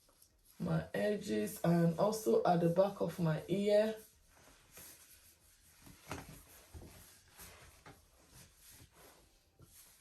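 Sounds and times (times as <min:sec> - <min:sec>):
fingers rubbing on skin: 0:03.8 - 0:10.0.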